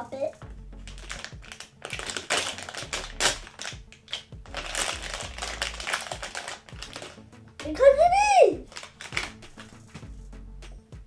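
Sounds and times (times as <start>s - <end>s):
background music: 0.0s - 11.0s
plastic packaging rustling: 0.9s - 7.7s, 8.6s - 10.1s.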